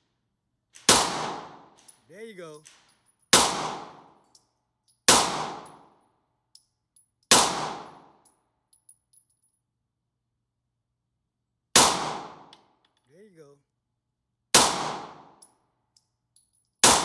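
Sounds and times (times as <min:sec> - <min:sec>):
light ticks of shell casings: 0:00.0 - 0:09.9, 0:12.4 - 0:14.4, 0:15.1 - 0:17.0
handgun shots echoing: 0:00.8 - 0:01.9, 0:02.6 - 0:04.2, 0:05.1 - 0:05.9, 0:07.3 - 0:08.2, 0:11.8 - 0:12.7, 0:14.6 - 0:15.4.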